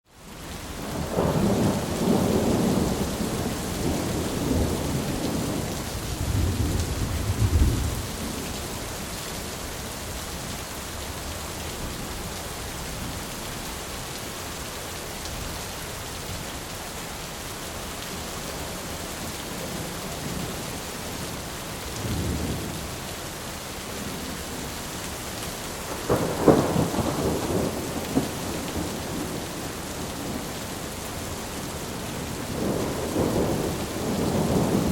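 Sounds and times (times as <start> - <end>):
heavy rain: 0.0 - 34.9
rolling thunder: 0.8 - 8.5, 25.9 - 30.6, 31.9 - 34.9.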